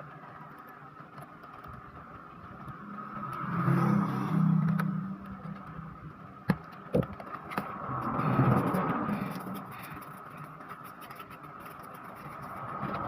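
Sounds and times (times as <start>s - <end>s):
motor vehicle passing: 2.0s - 6.3s, 7.4s - 13.0s.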